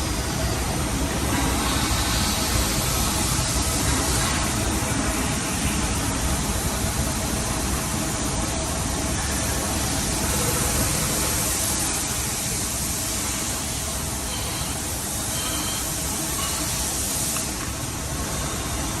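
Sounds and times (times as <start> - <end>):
continuous hiss: 0.0 - 19.0.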